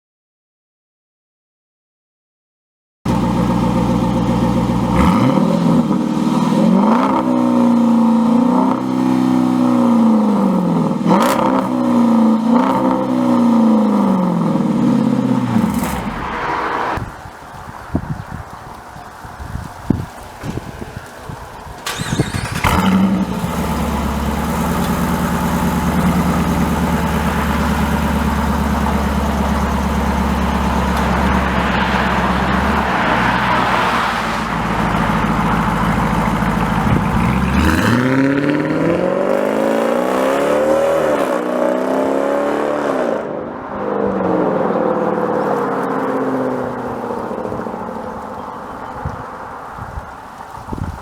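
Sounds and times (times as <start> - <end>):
vee eight engine idling and revving: 3.1 - 17.3, 21.8 - 51.0
engine starting: 15.7 - 17.0, 21.8 - 23.8.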